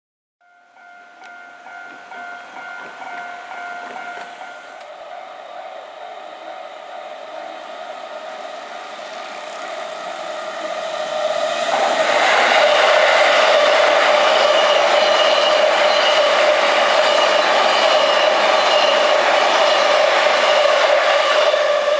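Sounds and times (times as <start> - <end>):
level-crossing bell dinging: 0.4 - 10.9
train passing rumble: 0.4 - 21.9.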